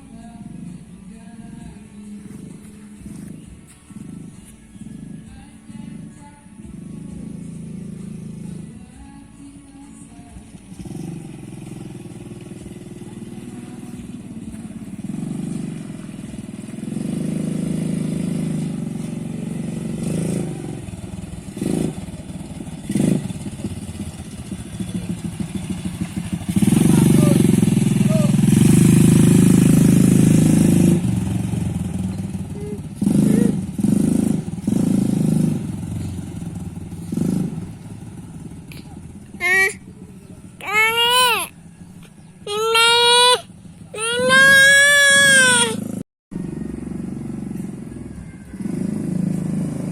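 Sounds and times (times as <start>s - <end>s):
small atv engine revving: 10.7s - 49.9s.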